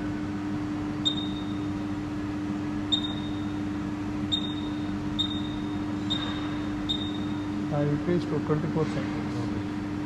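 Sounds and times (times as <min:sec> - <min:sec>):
electrical hum: 0:00.0 - 0:10.0
short high beeps: 0:01.0 - 0:01.6, 0:04.3 - 0:07.4.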